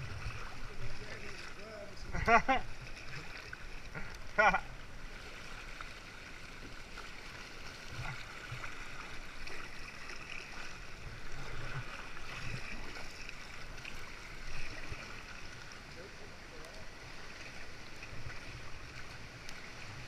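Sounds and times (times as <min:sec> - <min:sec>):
water lapping against kayak hull: 0:00.0 - 0:20.0.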